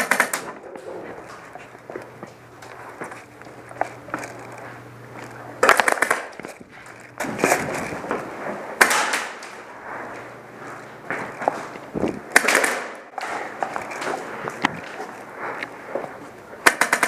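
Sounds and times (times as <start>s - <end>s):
airsoft guns firing bursts: 0.0s - 0.6s, 5.6s - 6.4s, 8.8s - 9.4s, 12.3s - 13.4s, 16.6s - 17.0s
rustling and movement: 0.0s - 16.6s.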